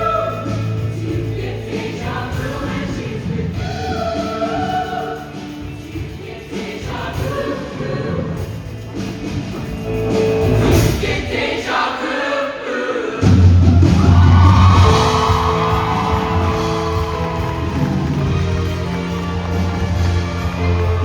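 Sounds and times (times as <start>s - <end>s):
choir singing with accompaniment: 0.0s - 21.0s
strong bass: 13.3s - 21.0s.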